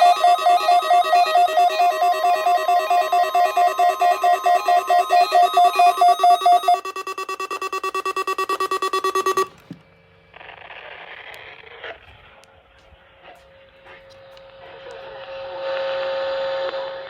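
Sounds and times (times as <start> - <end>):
electronic alert alarm beeping: 0.0 - 9.6.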